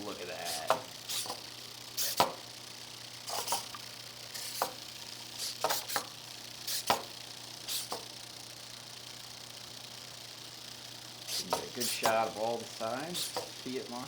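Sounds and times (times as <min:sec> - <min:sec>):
robot legs clicking and tapping: 0:06.7 - 0:08.1, 0:11.3 - 0:12.3, 0:13.2 - 0:13.6.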